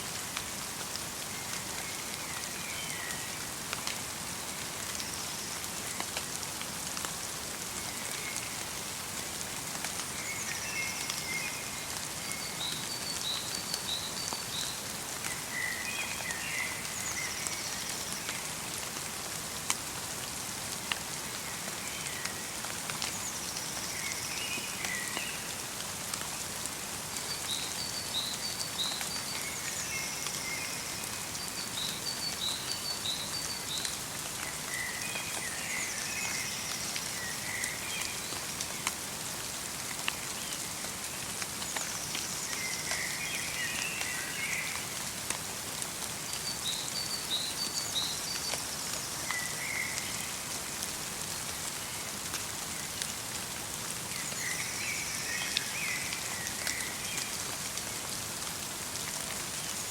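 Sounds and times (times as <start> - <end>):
light rain falling: 0.0 - 59.9
sharp raindrops: 0.0 - 59.9
songbirds chirping: 21.3 - 45.1.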